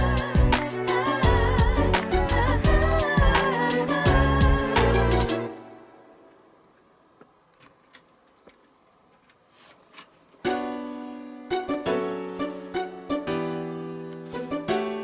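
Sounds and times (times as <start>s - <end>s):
piano tune: 0.0s - 6.2s, 10.4s - 15.0s.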